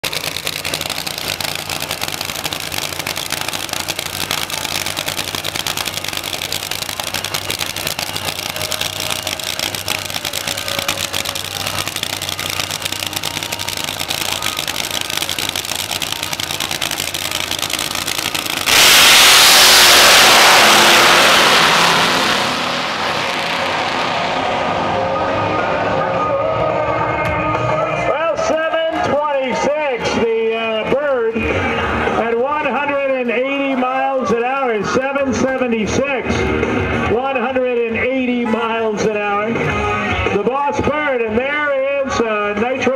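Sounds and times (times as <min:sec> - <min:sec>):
drag race cars idling: 0:00.0 - 0:42.9
race cars launching at full throttle: 0:00.1 - 0:28.3.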